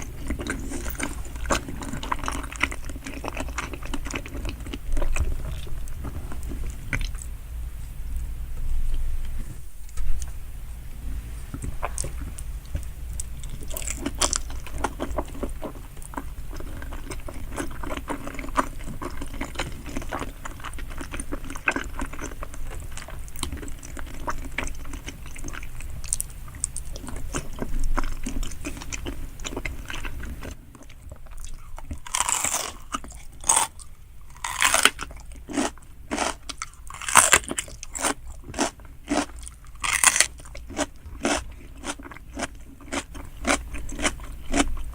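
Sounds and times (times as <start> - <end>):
close-miked chewing: 0.0 - 7.3, 11.5 - 44.9
steady low hum: 0.0 - 44.9
crunchy bites: 31.3 - 44.9.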